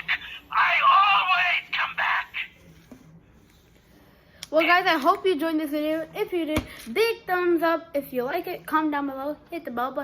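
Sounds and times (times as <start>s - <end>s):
person speaking: 0.0s - 2.9s.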